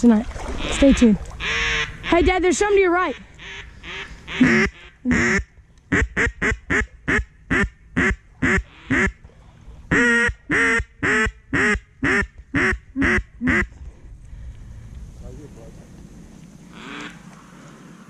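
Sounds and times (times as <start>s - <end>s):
duck call quacks: 0.6s - 2.3s, 3.1s - 9.2s, 9.9s - 13.7s.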